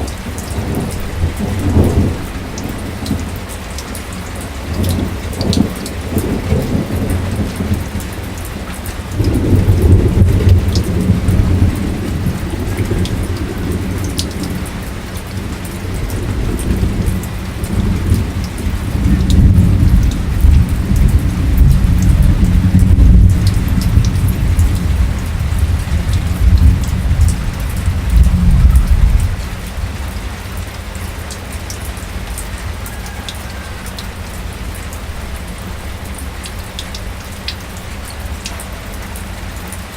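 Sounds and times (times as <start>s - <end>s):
rolling thunder: 0.0s - 3.5s, 9.1s - 30.1s
raindrops ticking: 0.0s - 39.9s.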